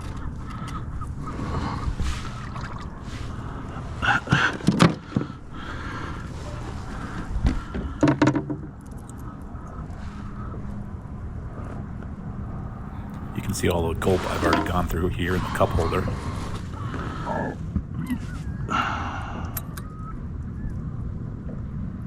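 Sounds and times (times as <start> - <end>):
water noise: 0.0 - 7.8, 12.5 - 17.5
wind: 0.0 - 22.0.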